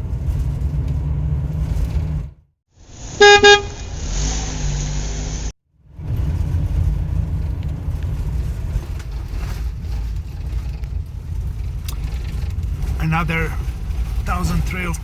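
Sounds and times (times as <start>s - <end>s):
low vehicle rumble: 0.0s - 15.0s
vehicle horn toots: 3.2s - 3.9s.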